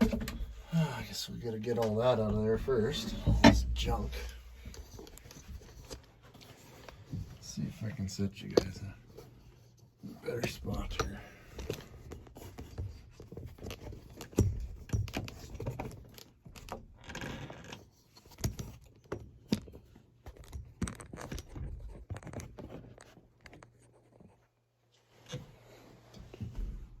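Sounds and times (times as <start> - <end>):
loose objects knocking and rattling: 0.0 - 0.7, 1.7 - 6.6.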